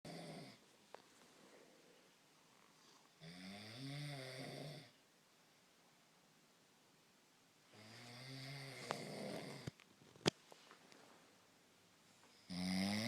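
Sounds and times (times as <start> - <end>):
person snoring: 0.1 - 0.6, 3.2 - 5.0, 7.8 - 9.7, 12.4 - 13.0.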